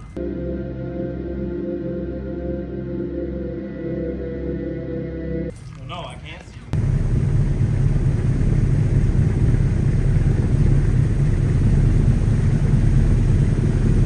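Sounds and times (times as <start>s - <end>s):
loud low rumbling: 6.7s - 14.0s.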